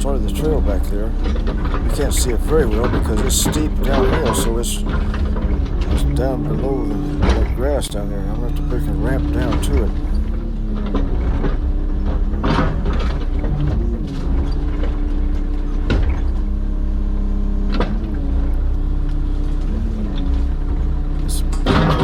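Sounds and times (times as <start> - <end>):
excavator engine under load: 0.0 - 22.0.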